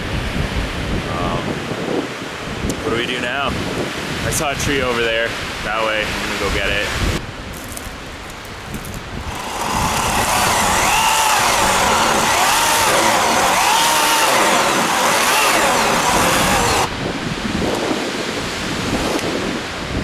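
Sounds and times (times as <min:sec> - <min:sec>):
wind buffeting microphone: 0:00.0 - 0:20.0
chainsaw cutting into tree: 0:07.5 - 0:16.9.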